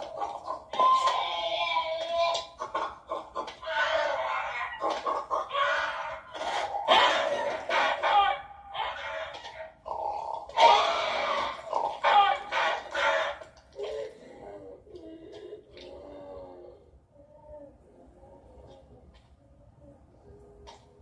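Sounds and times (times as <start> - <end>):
squawking creature cries: 0.5 - 2.6, 3.4 - 13.4.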